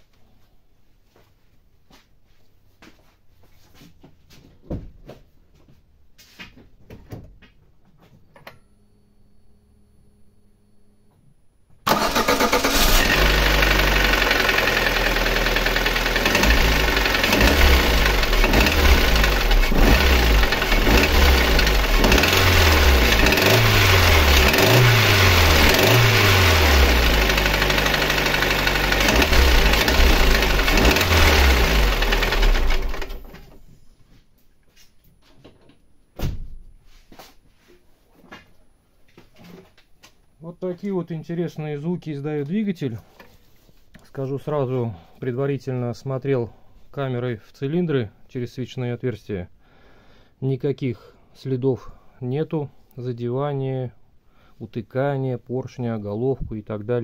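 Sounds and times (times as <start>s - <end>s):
faint steady whine: 8.2s - 11.8s
car engine starting and revving: 11.9s - 33.4s.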